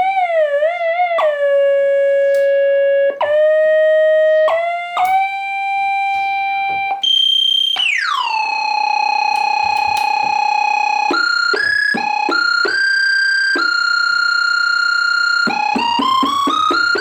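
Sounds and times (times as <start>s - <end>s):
synthesizer sustained notes: 10.5s - 17.0s.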